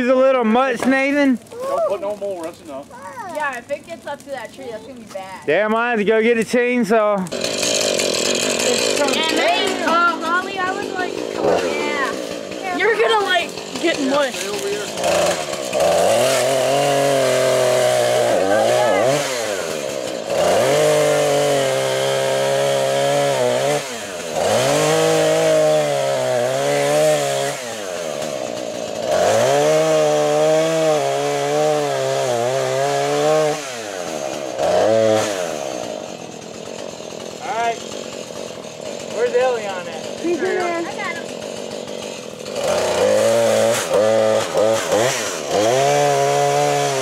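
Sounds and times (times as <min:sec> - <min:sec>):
chainsaw revving: 0:00.0 - 0:47.0.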